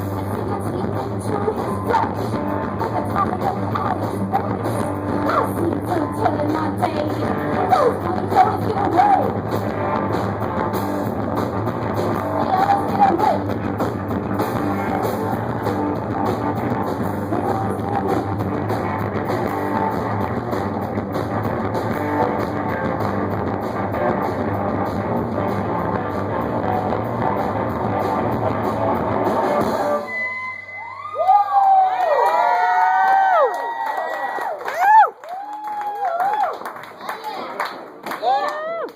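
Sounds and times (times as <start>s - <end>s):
rock band playing guitar and drums: 0.0s - 30.2s.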